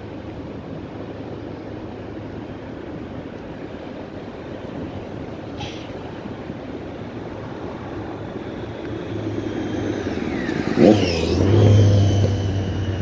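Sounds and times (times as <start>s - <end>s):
road traffic: 0.0s - 13.0s
vehicle passing close by: 7.4s - 13.0s.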